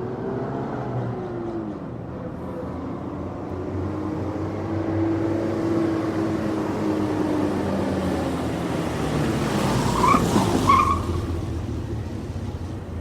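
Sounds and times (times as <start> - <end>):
tyre squeals: 9.8 - 11.3.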